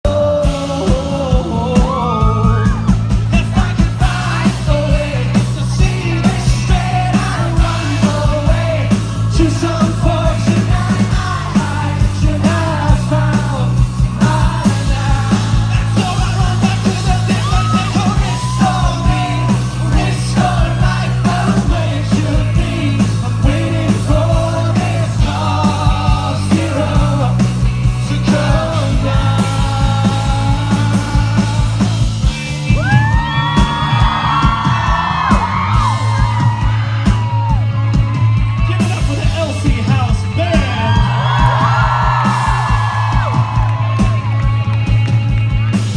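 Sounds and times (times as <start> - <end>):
man singing: 0.0 - 32.9
bass line: 0.0 - 45.9
rock band playing: 0.0 - 45.9
crowd yelling: 1.8 - 45.9.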